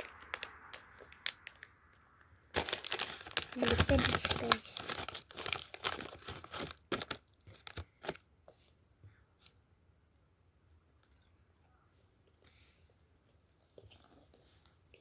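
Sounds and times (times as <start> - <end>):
plastic wrapper crinkling and tearing: 0.0 - 8.2.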